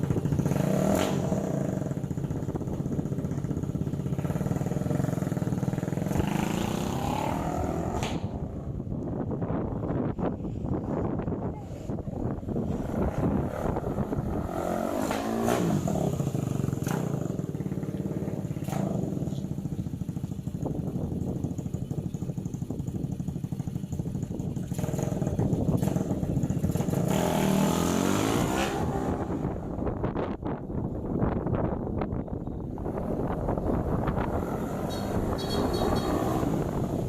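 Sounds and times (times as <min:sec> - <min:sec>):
motorcycle engine revving: 0:00.0 - 0:10.2, 0:10.8 - 0:37.0.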